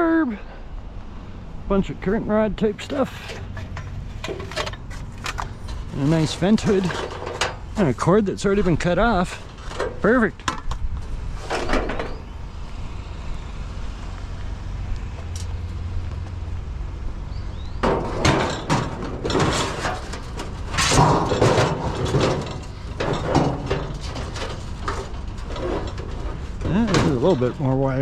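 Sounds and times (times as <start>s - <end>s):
scrap metal clattering: 2.9s - 12.2s, 17.7s - 28.0s
vehicle engine running: 12.1s - 28.0s.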